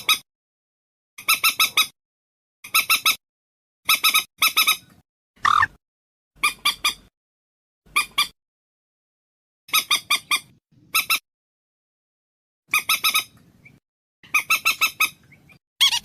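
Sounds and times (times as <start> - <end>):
bird calls high sharp notes: 5.4 - 5.8.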